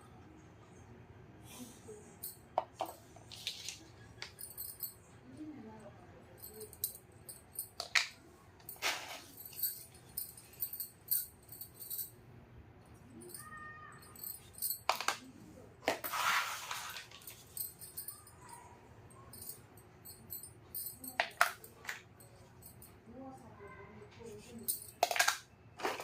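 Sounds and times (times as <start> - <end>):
plastic toy pieces clicking: 24.8 - 26.0.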